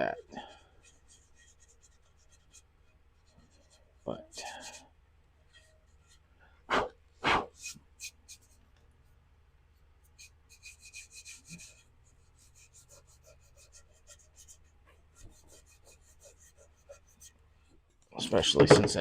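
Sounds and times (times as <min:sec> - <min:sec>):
scraping on ceramic surface: 0:18.2 - 0:19.0
knocks on ceramic pot: 0:18.5 - 0:19.0.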